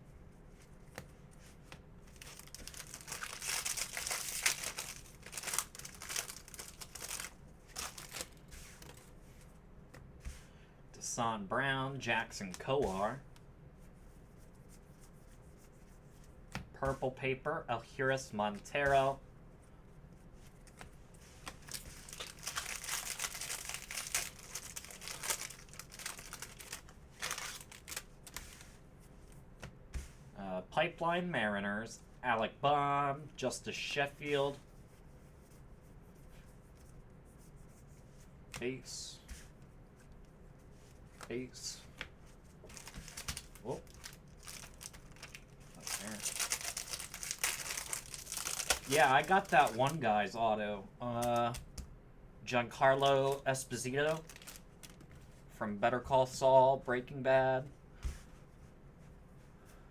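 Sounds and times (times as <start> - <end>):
foil wrapper crinkling and tearing: 2.1 - 9.0, 21.5 - 28.5, 42.7 - 50.0, 53.0 - 55.0.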